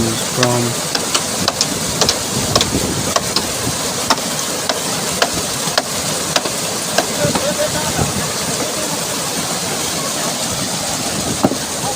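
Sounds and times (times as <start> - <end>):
mountain stream rushing: 3.4 - 11.9.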